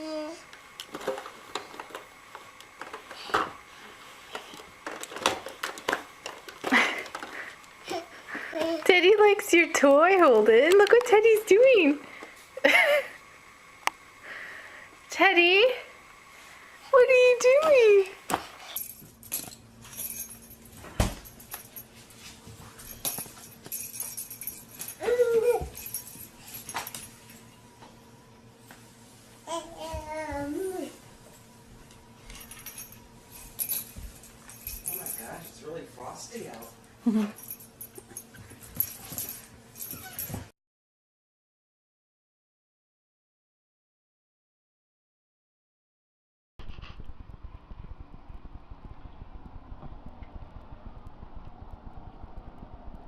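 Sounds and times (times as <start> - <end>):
toy jingling and clicking: 22.9 - 27.1, 32.3 - 35.6
dog whining: 24.9 - 25.9, 39.8 - 40.5.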